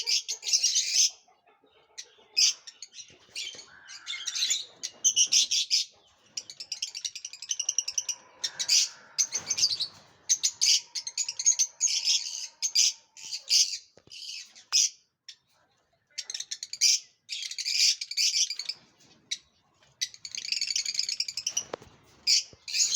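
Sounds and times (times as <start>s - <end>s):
lovebirds chirping shrilly: 2.4s - 15.0s, 20.0s - 22.9s.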